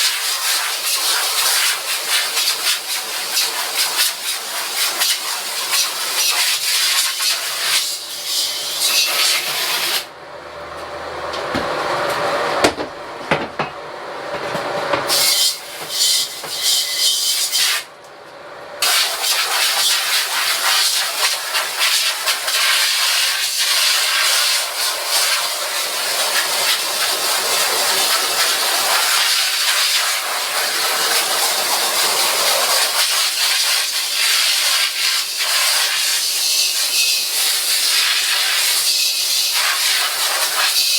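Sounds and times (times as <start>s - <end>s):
pressure washer spraying water: 0.0s - 10.1s, 18.8s - 40.9s.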